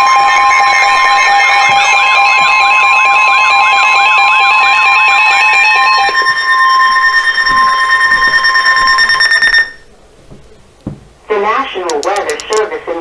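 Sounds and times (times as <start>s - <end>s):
warbling alarm sweep: 0.0s - 9.9s
steady alarm tone: 0.0s - 10.8s.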